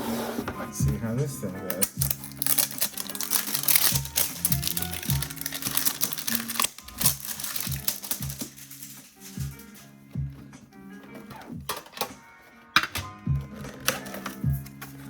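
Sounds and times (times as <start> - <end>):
background music: 0.0 - 15.0
foil wrapper crinkling: 1.7 - 9.9.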